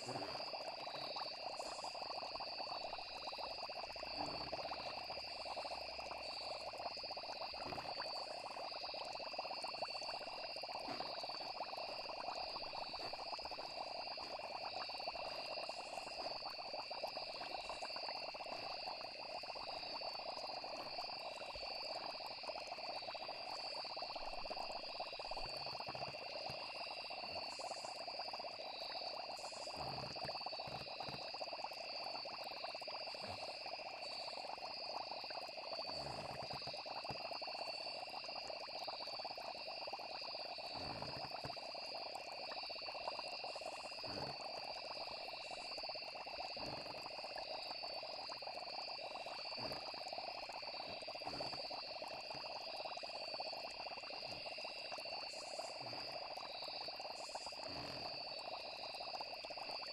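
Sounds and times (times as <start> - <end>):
crickets trilling: 0.0 - 59.9
frog chorus: 0.0 - 59.9
soft low thumps: 10.7 - 16.6.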